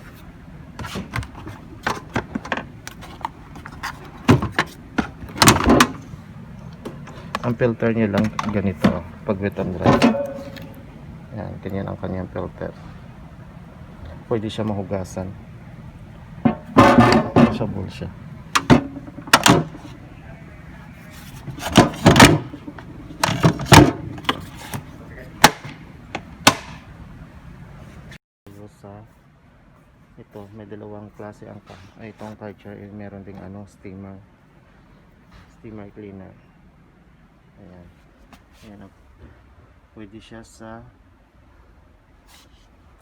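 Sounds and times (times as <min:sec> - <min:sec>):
plastic parts clicking and knocking: 0:00.8 - 0:10.8, 0:16.4 - 0:17.8, 0:18.5 - 0:20.0, 0:21.4 - 0:26.8
plastic clatters: 0:00.8 - 0:10.9, 0:18.5 - 0:20.0, 0:21.2 - 0:26.8.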